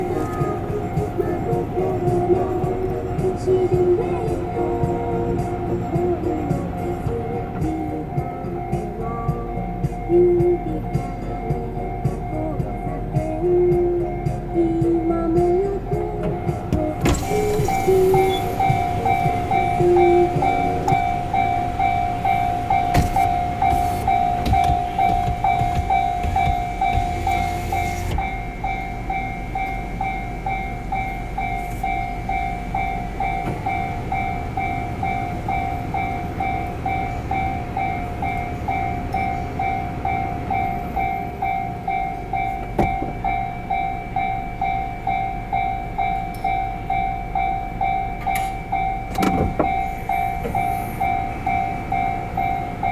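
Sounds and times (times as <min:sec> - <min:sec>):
train passing rumble: 0:00.0 - 0:52.9
level-crossing alarm ringing: 0:16.4 - 0:52.9.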